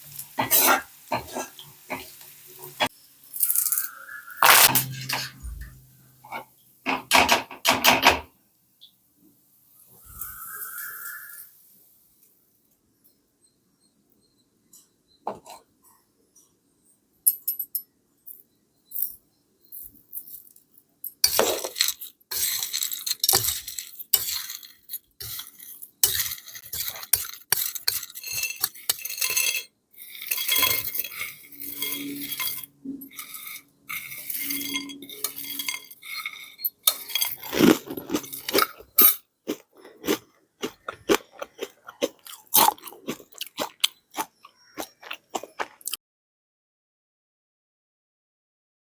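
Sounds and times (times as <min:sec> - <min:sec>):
spoon clinking against dish: 0:04.4 - 0:07.0, 0:21.3 - 0:39.2
snack pieces rattling and crunching: 0:21.3 - 0:34.5, 0:35.2 - 0:46.0.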